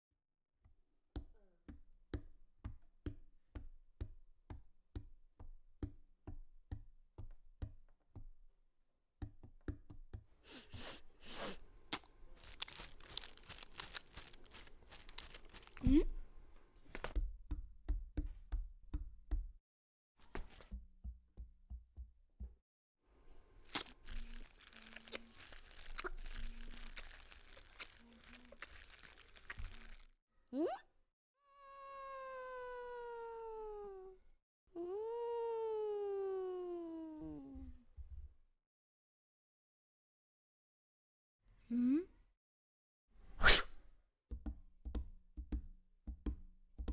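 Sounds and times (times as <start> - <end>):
rustling and crinkling: 12.3 - 17.2, 23.6 - 30.2.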